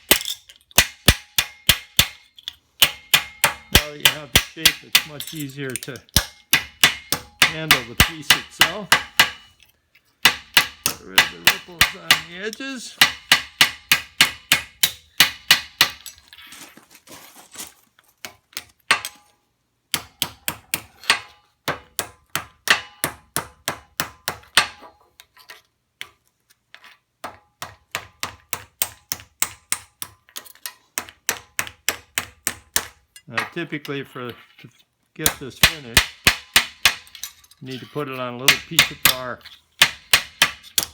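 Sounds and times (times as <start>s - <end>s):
hammer tapping sheet metal: 0.0s - 2.2s, 2.8s - 9.6s, 10.2s - 16.1s, 35.2s - 37.4s, 38.5s - 40.9s.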